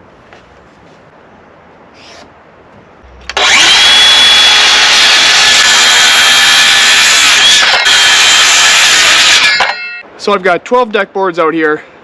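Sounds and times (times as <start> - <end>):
circular saw cutting wood: 3.3 - 9.8.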